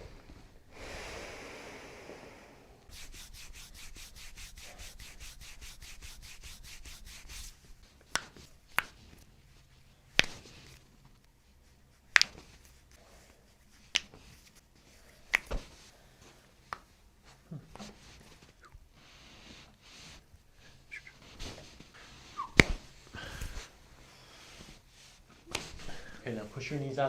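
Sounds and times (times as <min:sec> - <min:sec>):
fast rubbing strokes: 0:02.9 - 0:07.9.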